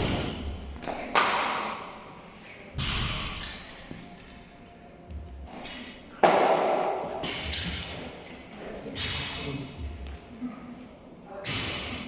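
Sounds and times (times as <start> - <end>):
heavy echoing impacts: 0.0 - 2.0, 5.9 - 8.1
faint music: 0.0 - 12.0.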